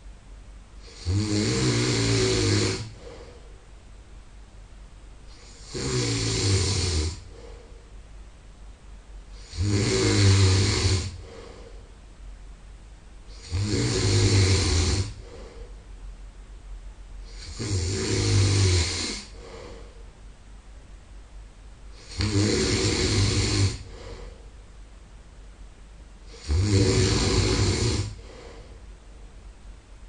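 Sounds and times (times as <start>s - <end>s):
quiet breathing: 0.0s - 4.6s, 5.2s - 8.3s, 9.0s - 20.3s, 21.8s - 25.0s, 26.2s - 29.5s
man snoring loudly: 0.8s - 3.2s, 5.3s - 7.5s, 9.3s - 11.6s, 13.3s - 15.4s, 17.2s - 19.7s, 22.0s - 24.2s, 26.3s - 28.5s.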